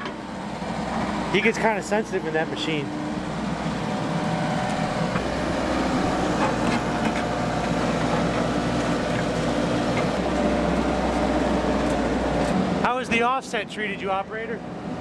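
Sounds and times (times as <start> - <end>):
excavator diesel engine running: 0.0 - 14.0.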